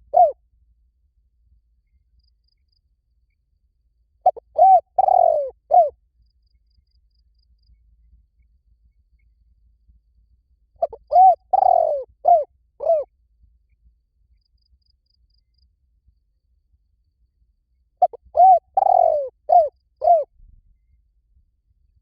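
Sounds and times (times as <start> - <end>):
dove cooing: 0.0 - 0.4, 4.2 - 5.9, 10.8 - 13.1, 18.0 - 20.3.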